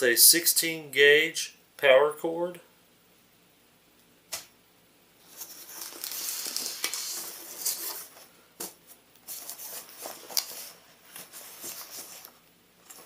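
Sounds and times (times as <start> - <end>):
packaging crinkling: 5.2 - 8.2, 9.3 - 13.0.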